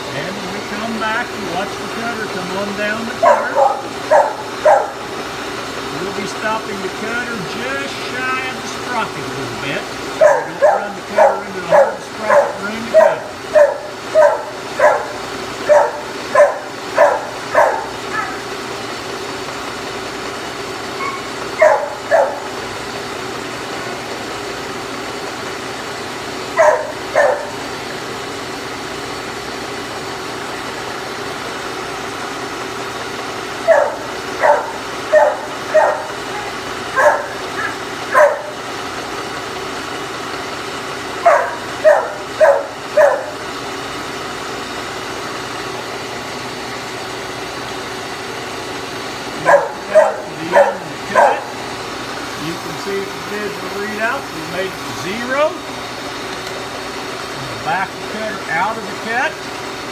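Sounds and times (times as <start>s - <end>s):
milling machine running: 0.0s - 59.9s
dog barking: 3.1s - 5.2s, 10.1s - 18.6s, 21.0s - 22.8s, 26.5s - 27.9s, 33.5s - 38.8s, 41.2s - 43.6s, 49.4s - 51.8s.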